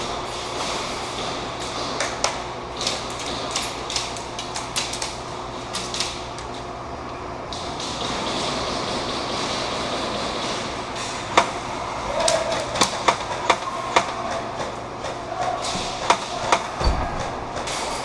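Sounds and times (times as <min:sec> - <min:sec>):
airsoft guns firing: 0:07.8 - 0:11.6.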